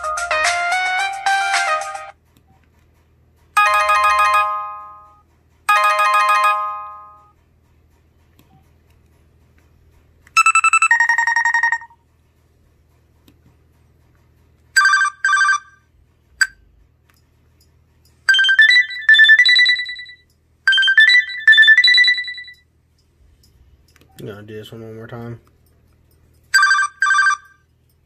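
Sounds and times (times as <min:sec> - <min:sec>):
short stepping ringtone melody: 0:03.6 - 0:07.3, 0:10.4 - 0:12.0, 0:18.3 - 0:22.6
two-note phone chime: 0:03.6 - 0:07.3.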